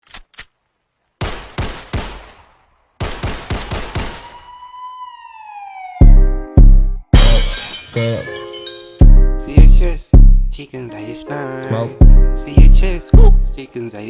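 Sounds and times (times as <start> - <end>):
gunshot sound effects: 3.0 - 4.4, 7.2 - 7.6
downward sweeping siren tone: 4.2 - 6.5.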